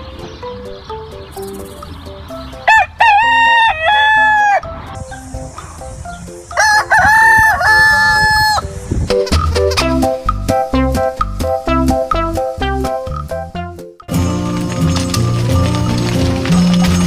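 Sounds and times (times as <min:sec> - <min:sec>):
light background music: 0:00.0 - 0:17.0
rooster crowing: 0:02.7 - 0:04.7, 0:06.5 - 0:08.7.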